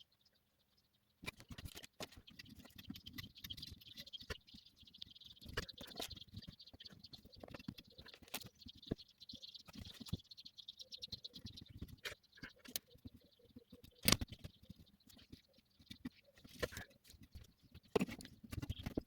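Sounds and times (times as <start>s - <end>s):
small clicks and taps: 11.4s - 19.0s.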